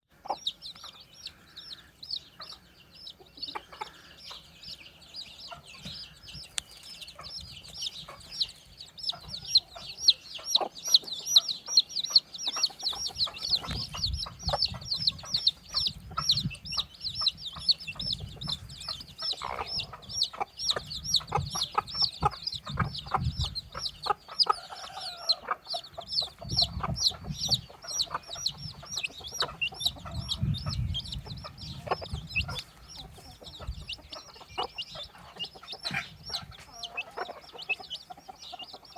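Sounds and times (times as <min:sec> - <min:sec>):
chicks peeping: 0:00.1 - 0:38.9
lower clucking: 0:09.1 - 0:38.9.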